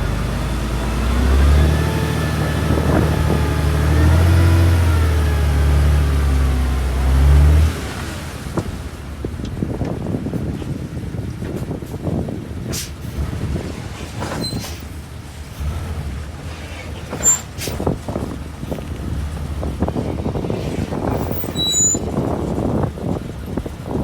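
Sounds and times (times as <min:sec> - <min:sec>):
heavy diesel equipment rumbling: 0:00.0 - 0:24.0
brief high squeaks: 0:14.2 - 0:14.9, 0:16.6 - 0:17.9, 0:21.0 - 0:22.2.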